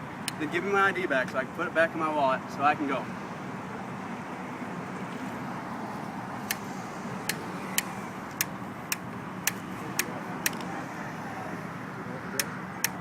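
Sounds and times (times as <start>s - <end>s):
street traffic: 0.0s - 13.0s
sharp evenly spaced clicks: 6.4s - 10.7s, 12.4s - 13.0s.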